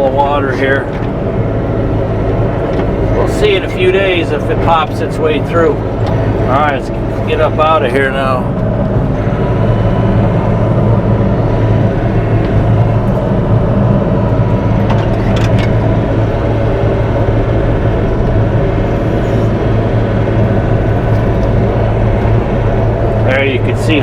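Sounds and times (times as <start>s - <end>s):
excavator diesel engine running: 0.0s - 24.0s
metal clank: 14.8s - 15.8s.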